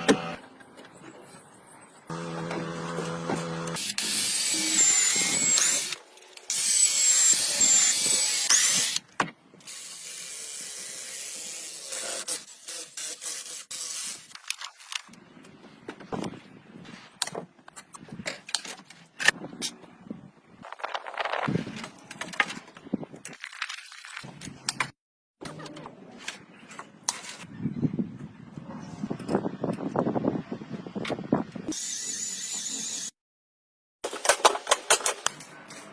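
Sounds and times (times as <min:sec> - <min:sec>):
power tool whining: 0:02.1 - 0:09.0.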